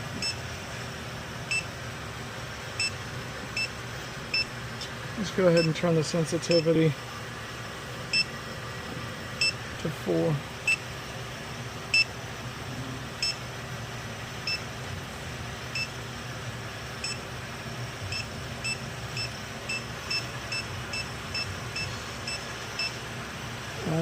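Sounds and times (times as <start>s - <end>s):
leak detector beeping: 0.0s - 0.5s, 1.5s - 1.8s, 2.8s - 4.6s, 5.5s - 5.8s, 6.4s - 6.8s, 8.1s - 8.4s, 9.4s - 9.6s, 10.6s - 10.9s, 11.9s - 12.2s, 13.2s - 13.4s, 14.4s - 14.7s, 15.7s - 16.0s, 17.0s - 17.3s, 18.0s - 23.0s
steady low hum: 0.0s - 24.0s.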